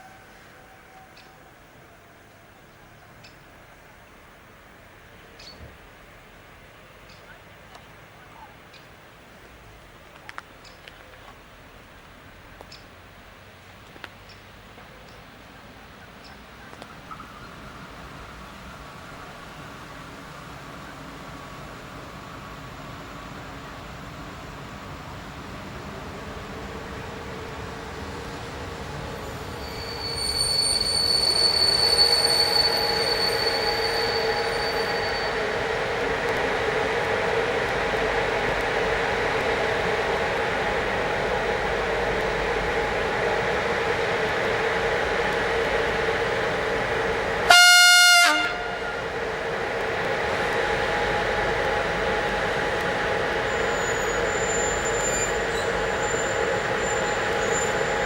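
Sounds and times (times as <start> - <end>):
train rolling past: 0.0 - 58.0
high-pitched wheel squeal: 29.3 - 35.6, 53.4 - 58.0.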